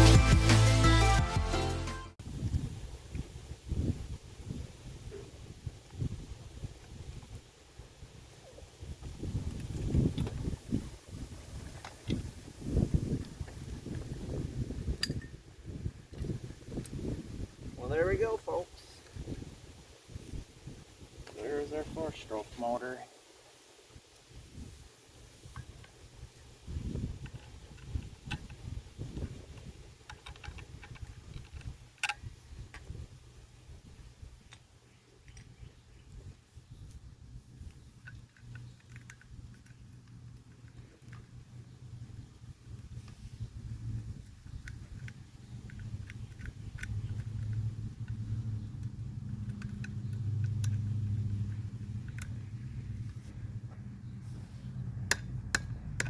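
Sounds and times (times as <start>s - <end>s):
tools and metal parts clicking: 15.0s - 15.4s, 29.5s - 32.8s, 38.0s - 41.3s, 44.2s - 52.5s
low handling rumble: 39.4s - 56.0s.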